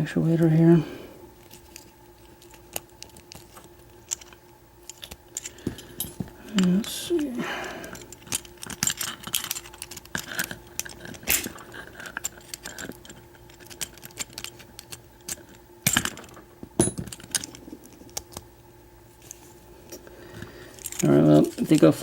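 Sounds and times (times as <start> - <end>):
padlock parts clicking and rattling: 1.4 - 7.0, 7.9 - 18.5, 19.2 - 22.0.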